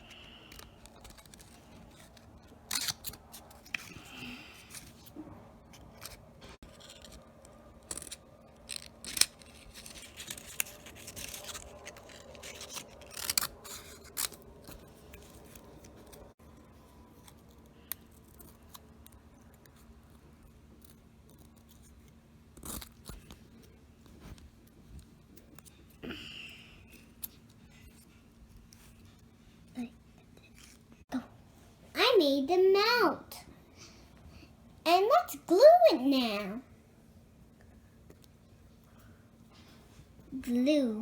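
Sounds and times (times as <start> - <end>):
scissors snipping paper: 0.0 - 4.0, 5.7 - 16.3
paper rustling: 5.8 - 16.4.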